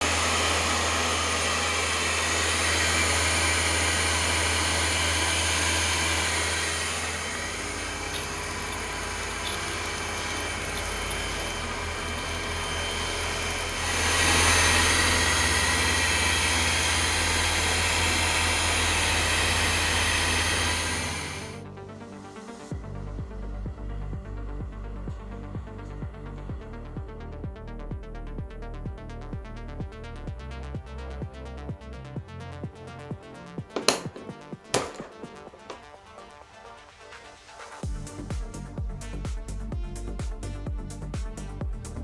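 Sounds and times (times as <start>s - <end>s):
pressure washer running: 0.0s - 21.6s, 33.8s - 35.9s.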